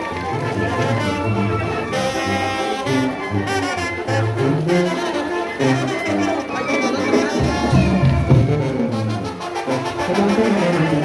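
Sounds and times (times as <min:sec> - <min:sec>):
brass band playing: 0:00.0 - 0:11.0.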